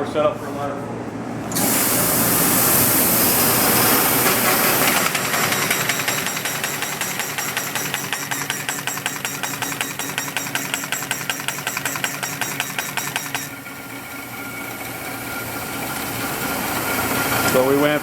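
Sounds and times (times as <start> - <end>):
machine hum: 0.9 - 18.0
rapid machine clicking: 3.8 - 14.0.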